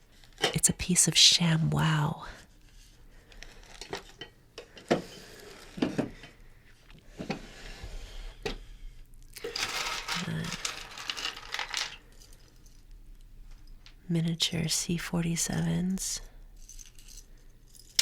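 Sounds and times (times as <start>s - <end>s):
small hard objects rattling: 9.4s - 12.8s.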